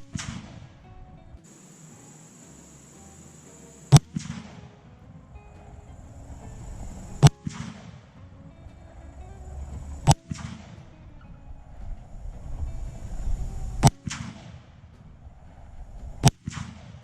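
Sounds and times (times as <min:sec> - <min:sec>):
gunshot echo: 0:03.9 - 0:04.9, 0:07.2 - 0:08.2, 0:13.8 - 0:14.7, 0:16.2 - 0:17.0.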